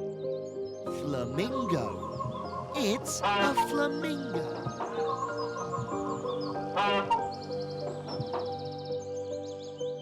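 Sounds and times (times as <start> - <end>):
soft background music: 0.0 - 10.0
flamingo honking call: 2.8 - 5.3, 6.6 - 7.5.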